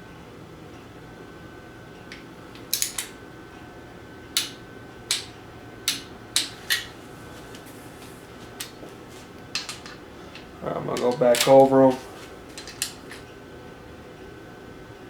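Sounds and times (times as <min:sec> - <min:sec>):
metallic clicks of hand tools: 0:02.1 - 0:03.1, 0:04.4 - 0:05.3, 0:05.9 - 0:06.9, 0:12.5 - 0:13.2.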